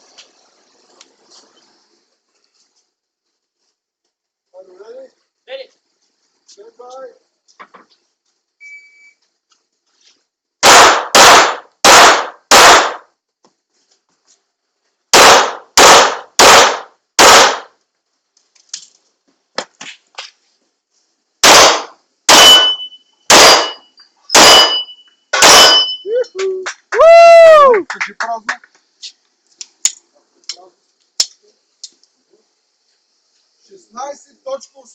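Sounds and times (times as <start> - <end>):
pistol shots: 10.6 - 13.1, 15.1 - 17.7, 21.4 - 25.9
steel targets ringing: 21.8 - 26.1
shot timer beep: 22.4 - 26.1.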